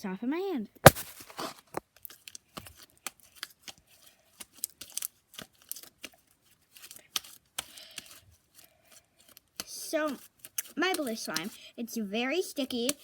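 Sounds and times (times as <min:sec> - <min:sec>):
sticky slime clicks and crackles: 0:04.4 - 0:06.2, 0:06.8 - 0:08.2.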